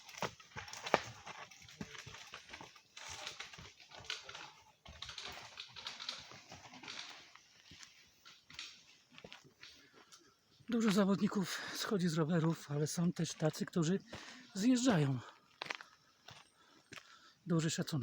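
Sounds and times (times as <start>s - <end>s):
stones clicking and crunching: 0.0s - 9.4s.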